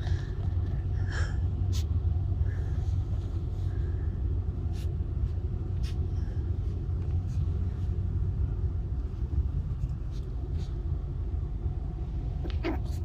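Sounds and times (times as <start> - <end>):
car cabin rumble: 0.0 - 13.0.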